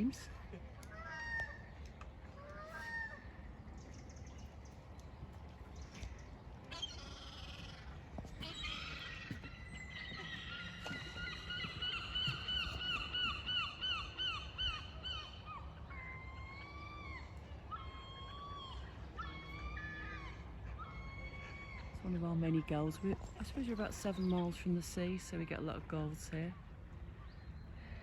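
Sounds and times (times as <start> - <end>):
gull calling: 6.7 - 23.1.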